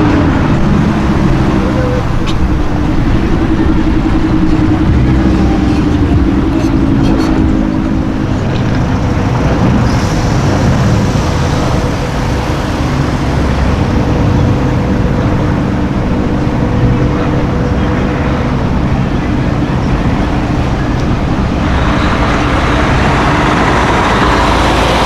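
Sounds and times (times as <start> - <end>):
car engines in traffic: 0.0 - 25.0.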